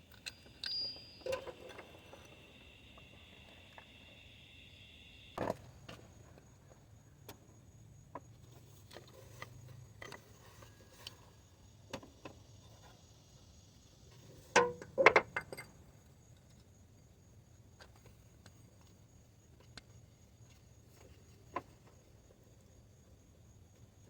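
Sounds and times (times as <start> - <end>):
tools and metal parts clicking: 0.1 - 2.3.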